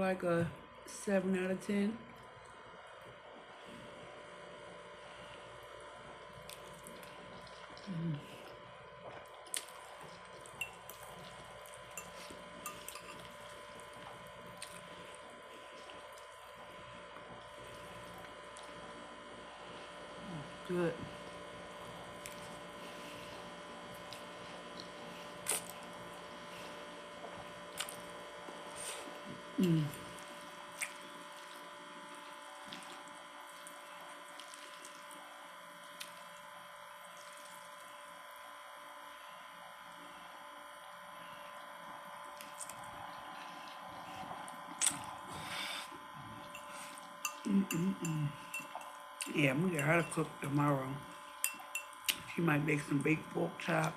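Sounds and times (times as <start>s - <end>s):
faint background hum: 0.0s - 53.9s
wet mouth eating sounds: 6.3s - 16.4s, 23.4s - 26.1s, 27.3s - 35.2s, 42.2s - 49.4s.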